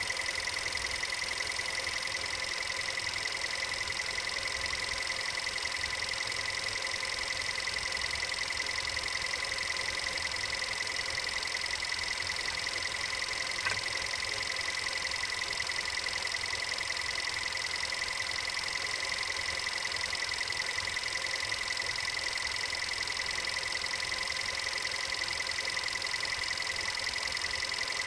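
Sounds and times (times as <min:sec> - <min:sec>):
engine running with knock: 0:13.5 - 0:14.1
sharp click: 0:13.6 - 0:14.0.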